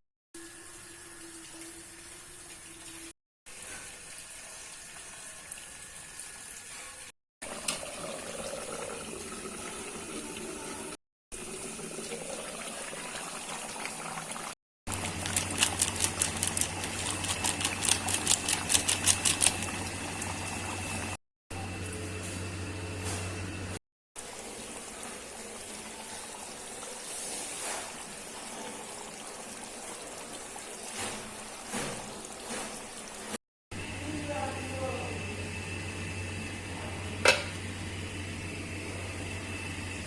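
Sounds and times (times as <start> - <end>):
curry sizzling and bubbling in a pan: 24.2 - 33.4.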